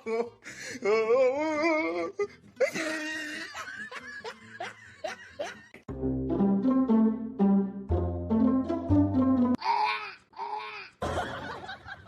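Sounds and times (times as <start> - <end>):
person laughing: 2.6 - 5.8.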